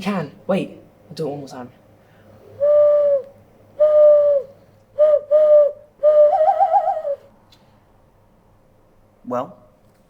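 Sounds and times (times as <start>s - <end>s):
person imitating hooting bird call: 2.6s - 7.3s.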